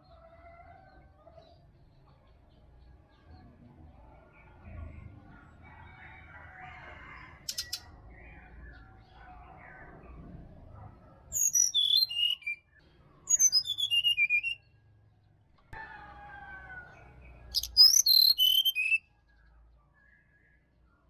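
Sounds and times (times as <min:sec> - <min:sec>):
bird singing high whistled notes: 0:11.4 - 0:12.7, 0:13.3 - 0:14.7, 0:17.5 - 0:19.1.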